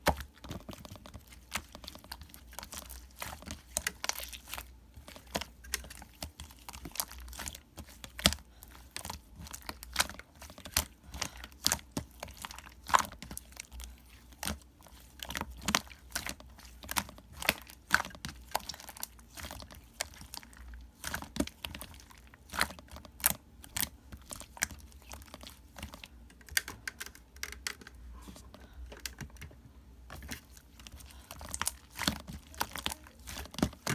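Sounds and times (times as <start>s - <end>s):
crinkling: 0.0s - 33.9s
close-up clicks and taps: 26.2s - 30.4s.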